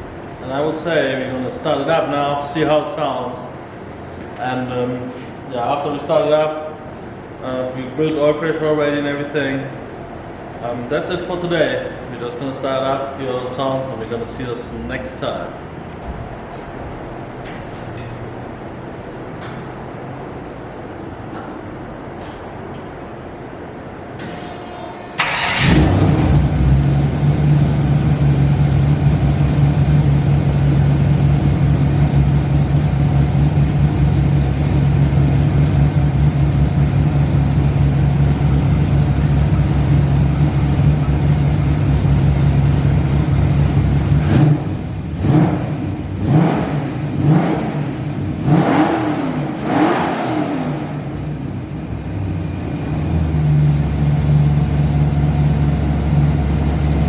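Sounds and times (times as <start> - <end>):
car engine idling and revving: 24.2 - 57.0.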